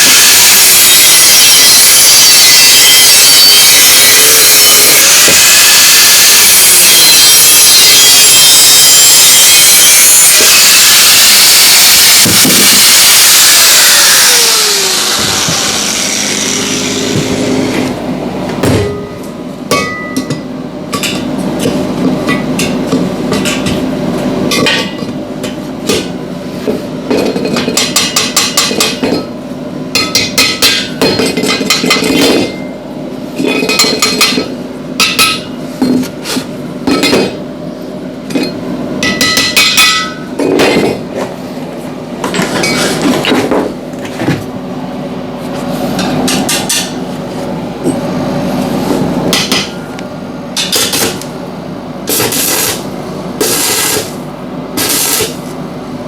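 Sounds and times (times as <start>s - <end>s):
hammer striking metal: 18.6s - 21.2s, 38.4s - 40.8s.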